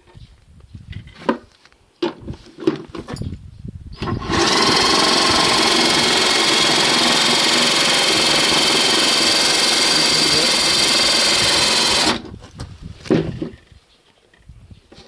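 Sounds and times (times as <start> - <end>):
electric motor whining: 4.0 - 12.3.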